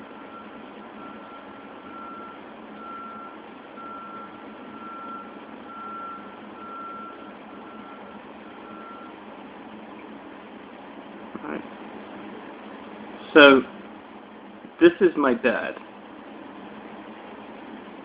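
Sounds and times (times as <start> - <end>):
vehicle reversing alarm beeps: 0.1 - 9.2.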